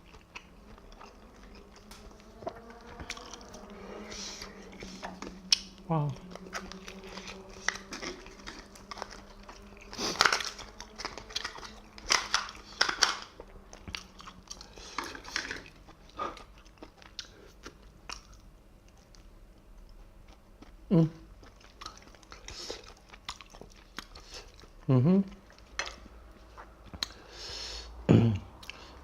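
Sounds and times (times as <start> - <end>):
wet chewing noises: 0.0 - 27.4
person humming: 5.8 - 7.9, 24.9 - 25.3.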